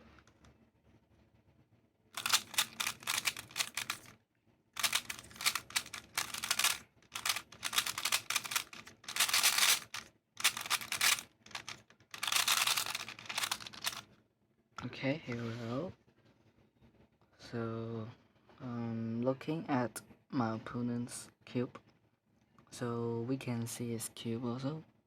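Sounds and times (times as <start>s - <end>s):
puzzle cube clicking: 2.2s - 4.1s, 4.8s - 14.0s.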